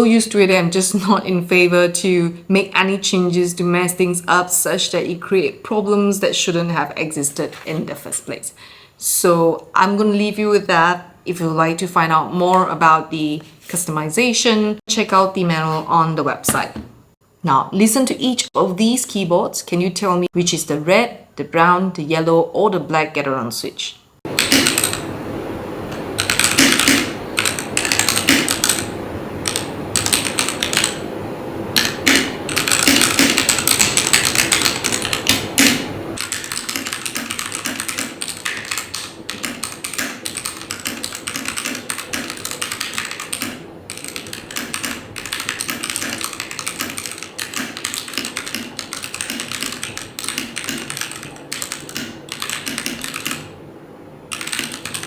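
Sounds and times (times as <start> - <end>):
mechanical keyboard typing: 24.4 - 25.0, 26.2 - 31.0, 31.8 - 53.5, 54.3 - 55.0.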